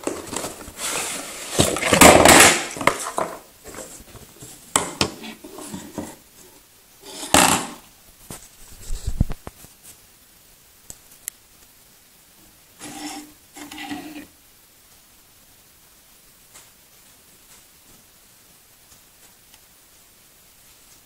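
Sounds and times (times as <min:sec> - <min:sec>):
packaging rustling and scraping: 0:00.0 - 0:06.2, 0:12.8 - 0:14.3.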